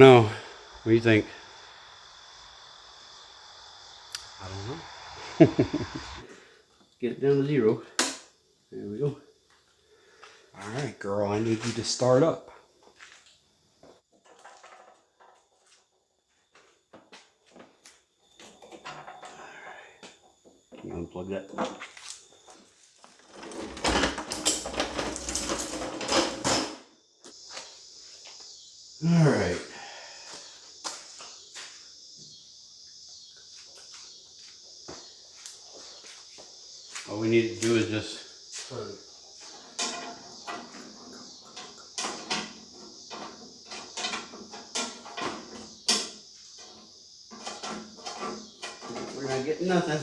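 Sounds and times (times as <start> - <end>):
faint steady hiss: 0.0 - 50.0
clattering knocks and rustling: 14.1 - 15.6, 22.6 - 26.9, 39.3 - 49.4.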